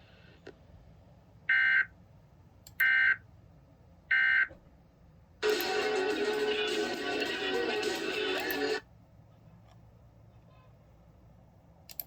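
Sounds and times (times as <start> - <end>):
music: 5.4 - 8.8.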